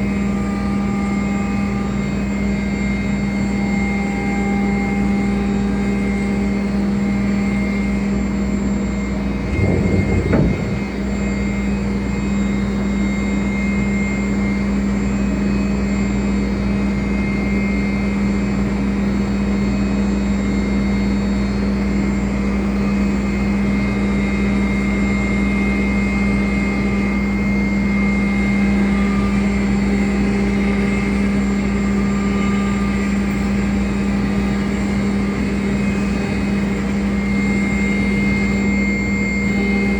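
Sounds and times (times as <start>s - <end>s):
cnc router humming: 0.0s - 12.7s, 22.4s - 39.9s.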